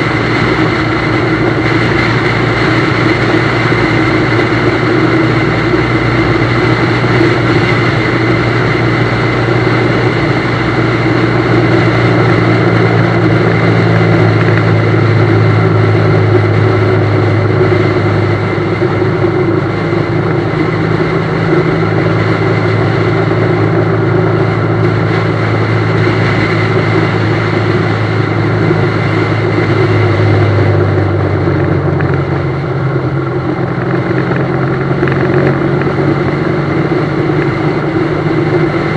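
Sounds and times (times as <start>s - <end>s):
motorcycle engine running: 0.0s - 38.9s
rushing wind noise: 0.0s - 38.9s.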